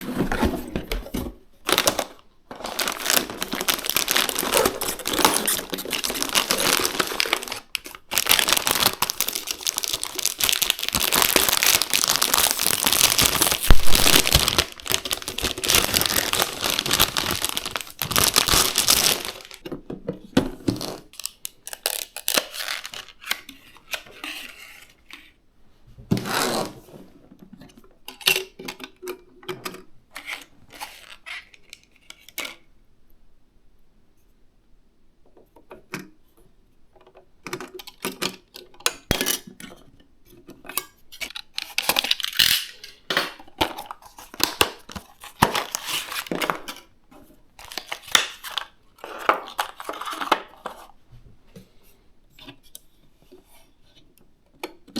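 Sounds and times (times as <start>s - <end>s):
packaging crinkling and tearing: 1.6s - 19.6s, 20.7s - 23.5s, 41.2s - 43.0s, 43.6s - 46.9s, 47.6s - 50.9s.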